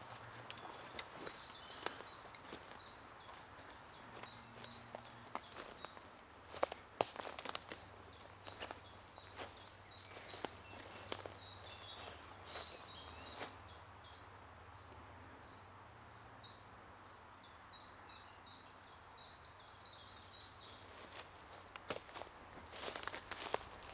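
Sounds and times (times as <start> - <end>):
small birds chirping: 0.0 - 15.7, 16.4 - 23.9
faint sharp crackles: 0.5 - 2.8, 4.1 - 11.4.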